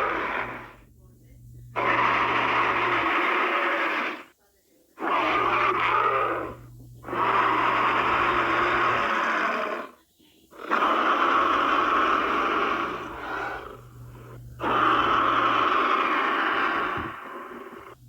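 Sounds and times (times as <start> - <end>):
dinosaur roars: 0.0 - 0.8, 1.8 - 4.3, 5.0 - 10.0, 10.6 - 18.0
steady low hum: 0.0 - 3.2, 5.3 - 9.2, 11.2 - 18.0.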